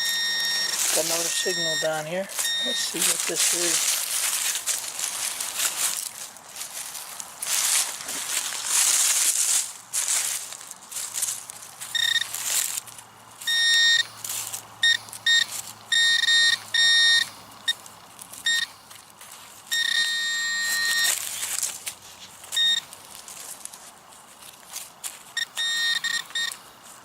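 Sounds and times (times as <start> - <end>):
metal detector beeping: 0.0 - 4.8, 11.8 - 12.6, 13.4 - 14.2, 14.8 - 18.8, 19.7 - 21.6, 22.5 - 23.0, 25.3 - 26.6.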